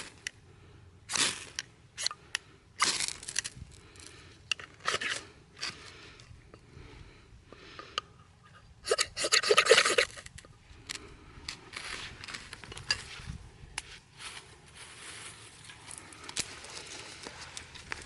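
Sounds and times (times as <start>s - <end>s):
rustles and small clicks: 9.9s - 14.5s, 15.6s - 18.0s.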